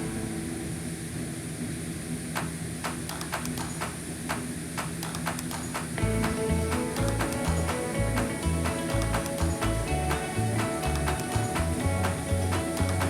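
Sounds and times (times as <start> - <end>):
background music: 6.0 - 13.0.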